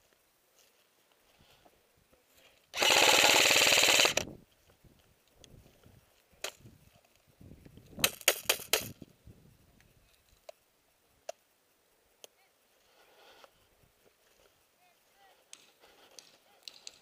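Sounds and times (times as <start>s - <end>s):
airsoft guns firing: 2.8s - 4.3s.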